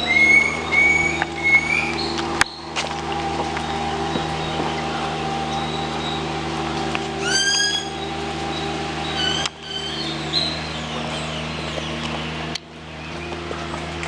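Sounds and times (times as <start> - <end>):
birds giving short high calls: 0.0 - 2.7, 3.7 - 12.4
steady low hum: 0.0 - 14.0.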